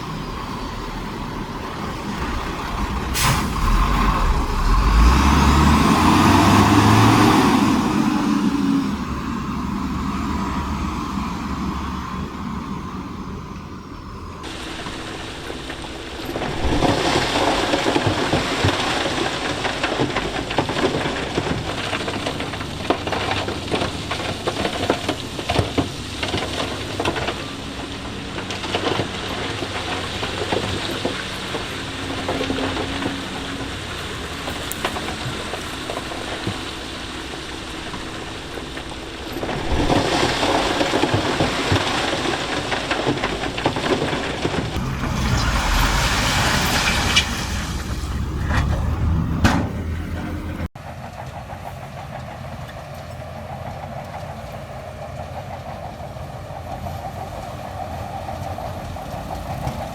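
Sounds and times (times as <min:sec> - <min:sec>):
diesel engine running: 0:00.0 - 0:51.8
stones clattering and rumbling: 0:14.4 - 0:49.6.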